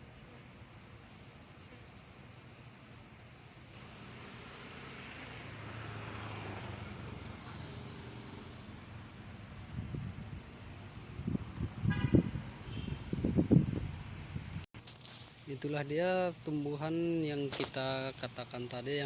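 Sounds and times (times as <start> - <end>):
vehicle passing by: 3.8 - 14.4.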